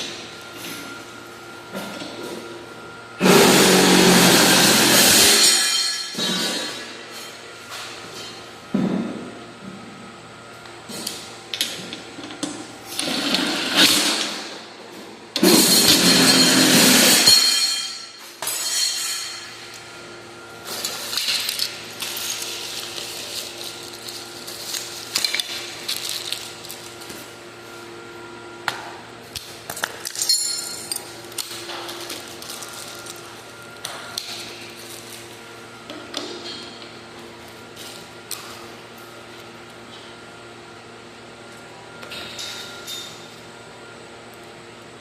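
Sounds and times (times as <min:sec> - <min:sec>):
metal parts clicking and clinking: 0:29.7 - 0:33.2.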